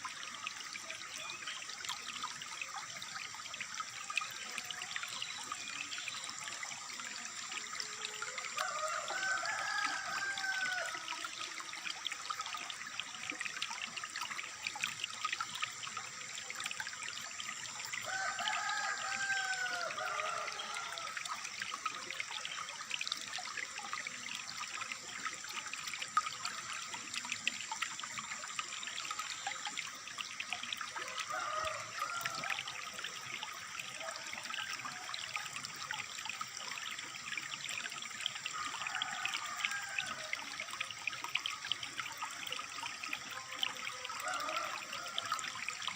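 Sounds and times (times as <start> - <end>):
water trickling and splashing: 0.0 - 45.9.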